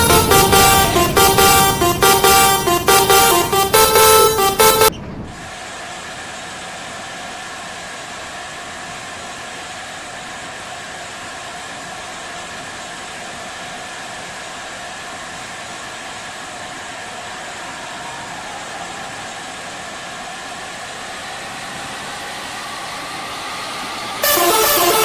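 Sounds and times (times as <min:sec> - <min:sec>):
bus horn tune: 0:00.0 - 0:05.0, 0:24.2 - 0:25.0
vehicle hum and hiss: 0:00.0 - 0:25.0.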